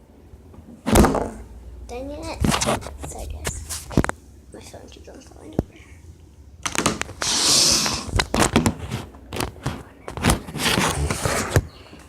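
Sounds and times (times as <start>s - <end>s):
scraping and rustling: 2.1s - 4.2s, 6.7s - 12.0s.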